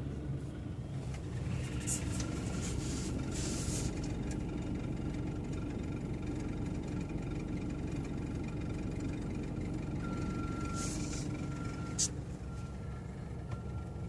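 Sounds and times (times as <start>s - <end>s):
car engine idling: 0.0s - 14.0s
short hiss: 1.7s - 4.0s, 10.8s - 11.3s, 12.0s - 12.2s.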